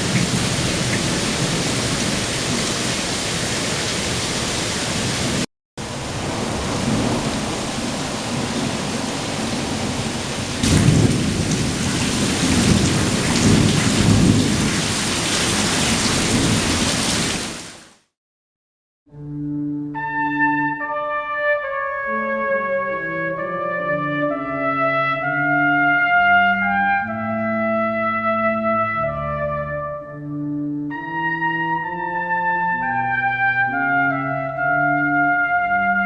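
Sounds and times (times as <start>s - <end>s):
heavy rain pouring: 0.0s - 18.0s
low rolling thunder: 5.8s - 17.0s.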